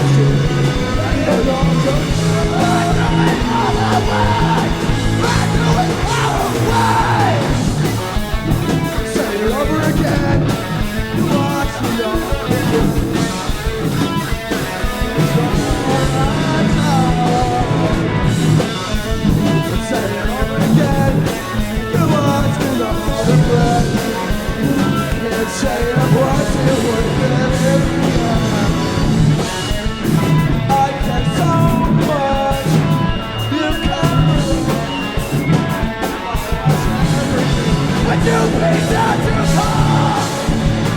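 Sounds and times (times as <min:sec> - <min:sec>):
person singing: 0:00.0 - 0:07.9, 0:15.0 - 0:40.9
drums: 0:00.0 - 0:40.9
electric guitar: 0:00.0 - 0:40.9.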